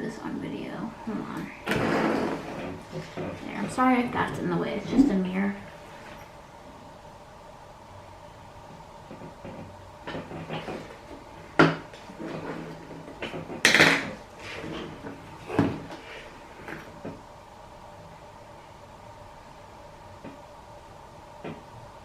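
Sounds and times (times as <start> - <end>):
objects clattering on a tabletop: 11.6 - 16.0.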